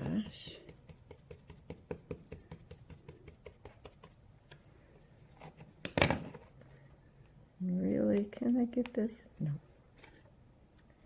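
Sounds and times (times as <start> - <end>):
brush tapping on glass: 0.0 - 4.2.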